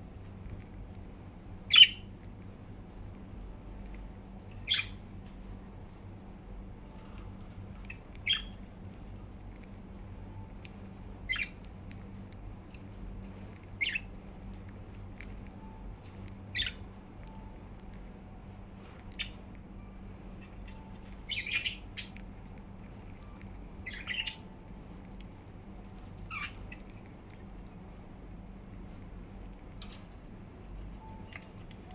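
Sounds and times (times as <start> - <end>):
steady low hum: 0.0 - 31.9
budgerigars chirping: 1.7 - 2.1, 4.6 - 5.0, 7.9 - 8.6, 11.3 - 11.7, 13.8 - 14.2, 16.4 - 17.5, 19.1 - 19.4, 20.4 - 22.3, 23.2 - 24.6, 26.2 - 26.9.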